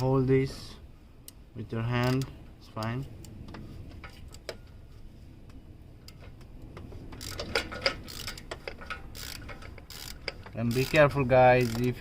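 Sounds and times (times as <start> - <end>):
socket ratchet clicking: 7.2 - 12.0.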